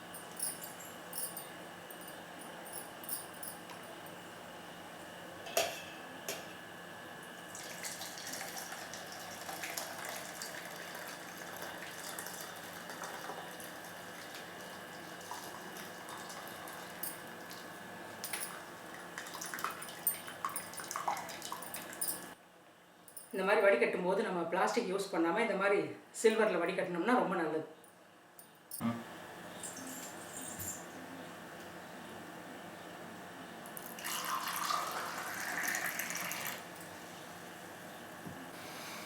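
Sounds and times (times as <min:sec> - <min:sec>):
liquid pouring through a strainer: 0:33.8 - 0:36.6.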